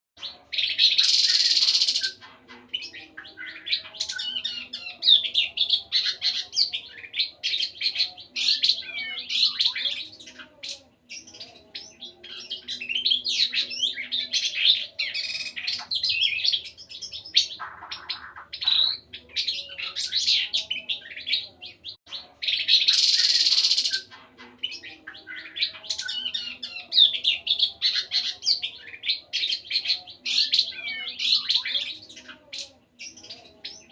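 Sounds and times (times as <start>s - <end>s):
songbird chirping and warbling: 0.2s - 33.9s.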